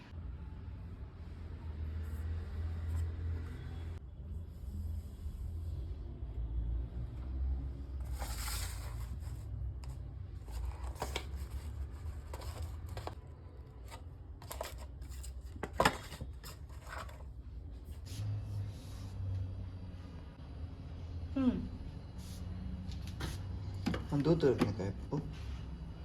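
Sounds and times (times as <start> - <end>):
objects rustling: 8.0 - 17.4.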